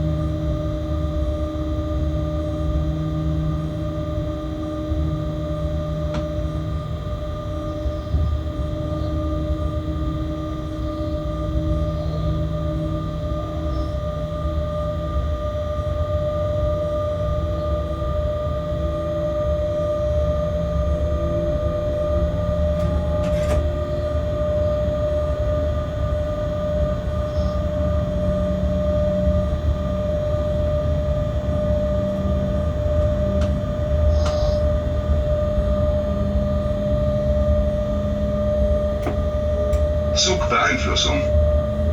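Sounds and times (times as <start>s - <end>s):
locomotive low rumble: 0.0s - 41.9s
high whine: 27.3s - 41.9s.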